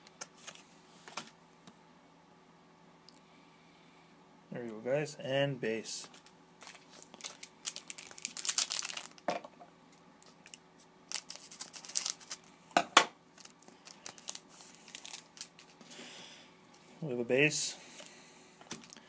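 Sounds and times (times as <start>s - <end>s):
wrapper crinkling and tearing: 6.0s - 9.3s, 10.2s - 12.5s, 13.3s - 15.8s, 18.7s - 19.0s.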